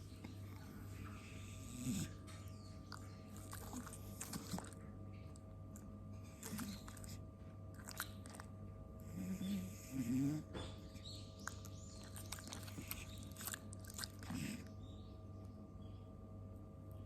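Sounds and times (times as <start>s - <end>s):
pig snoring: 1.2s - 2.2s, 9.0s - 10.6s, 14.0s - 14.7s.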